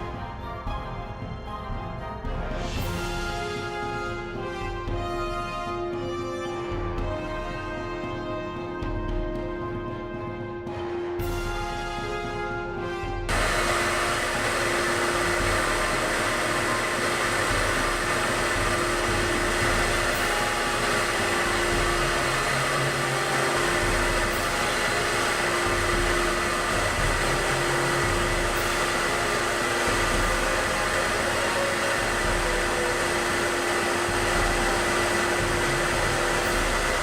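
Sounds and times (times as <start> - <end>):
rushing machine noise: 13.3 - 37.0.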